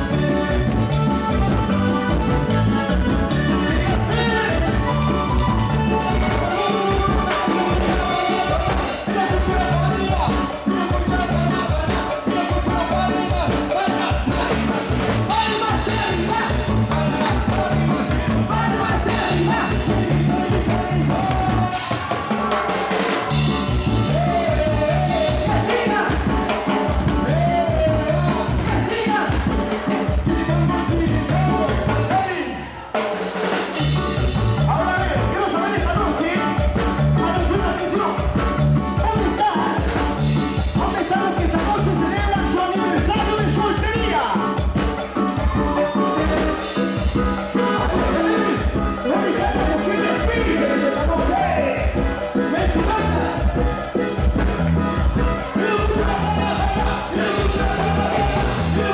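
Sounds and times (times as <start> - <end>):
latin dance music: 0.0 - 58.9
dance music with singer: 34.6 - 58.9.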